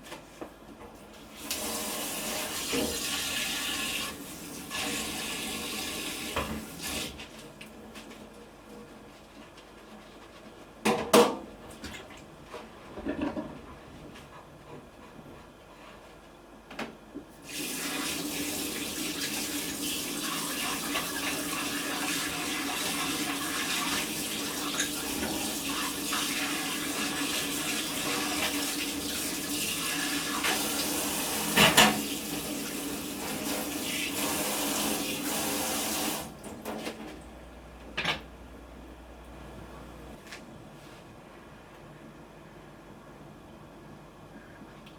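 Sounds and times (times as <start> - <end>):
tap water running into sink: 1.4 - 7.3, 17.5 - 36.8.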